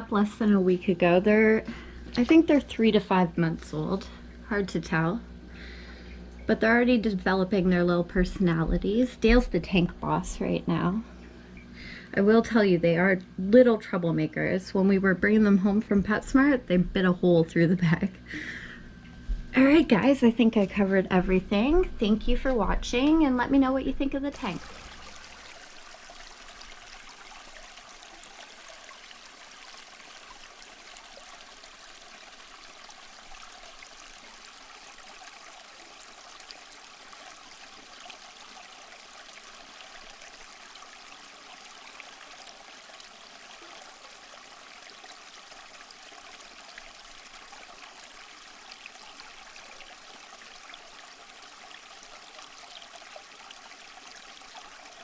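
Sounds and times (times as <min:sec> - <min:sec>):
filter outflow trickling: 0:00.0 - 0:12.6, 0:24.2 - 0:55.0
air stones bubbling: 0:24.3 - 0:38.6.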